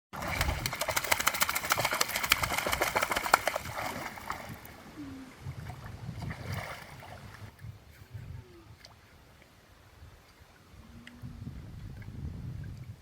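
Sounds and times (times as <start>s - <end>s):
water splashing: 0.2s - 7.6s.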